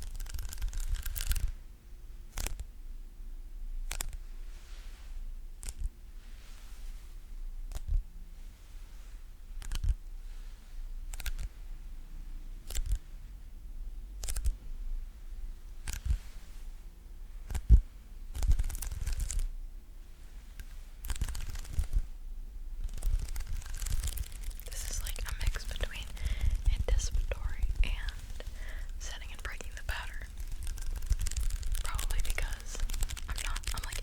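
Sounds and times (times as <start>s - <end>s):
crackling peels: 0.0s - 1.5s, 20.6s - 22.0s, 22.8s - 34.0s
sticky taps and peels: 29.1s - 34.0s.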